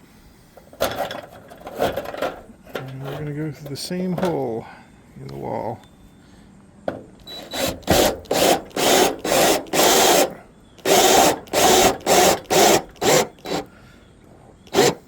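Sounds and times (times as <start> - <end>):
drill driving screw into wood: 7.2 - 13.7, 14.7 - 15.0.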